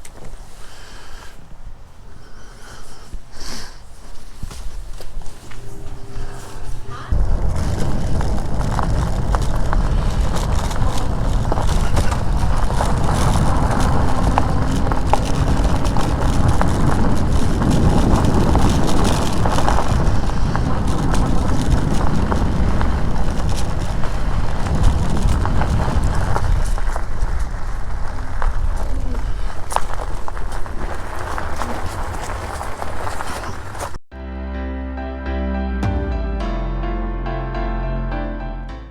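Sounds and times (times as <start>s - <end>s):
wind buffeting microphone: 4.8s - 34.0s.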